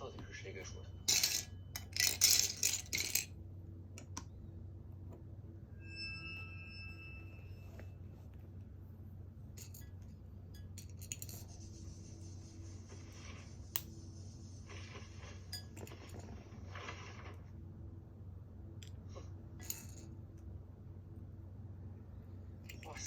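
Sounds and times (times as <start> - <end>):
steady low hum: 0.0 - 23.0
plastic bricks clicking and rattling: 1.1 - 3.3.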